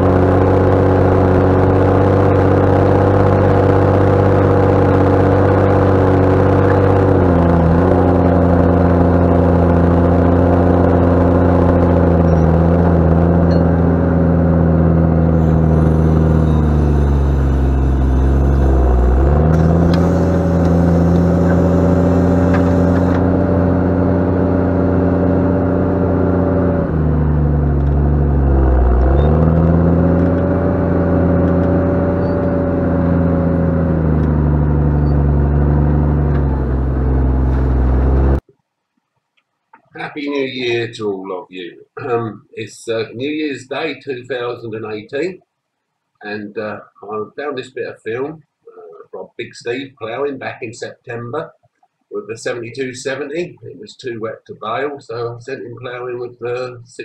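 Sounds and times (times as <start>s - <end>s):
tractor diesel engine growling: 0.0s - 38.4s.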